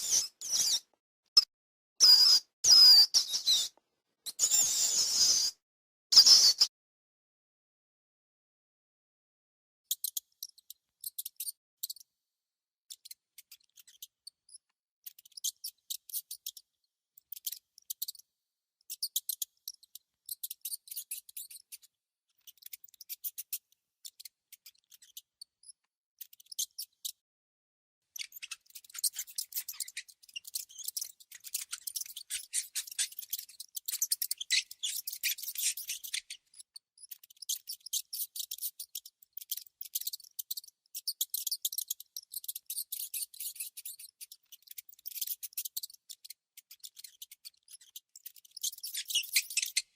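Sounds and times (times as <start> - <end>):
mouse squeaking: 0.0 - 5.6, 9.9 - 12.1, 12.9 - 18.3, 18.9 - 27.2, 28.1 - 49.9.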